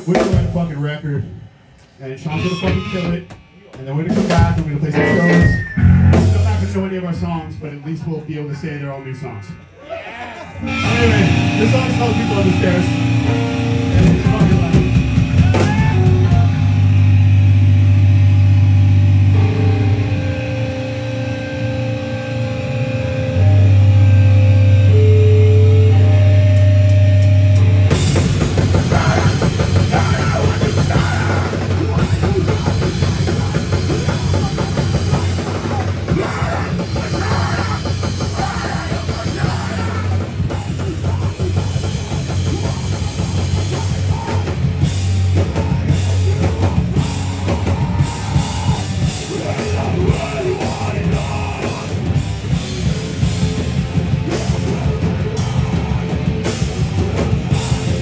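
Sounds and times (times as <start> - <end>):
fast dense drumming: 0.0 - 1.1, 2.4 - 7.6, 10.9 - 19.5, 27.8 - 58.0
heavy rock band playing live: 0.0 - 7.5, 10.5 - 58.0.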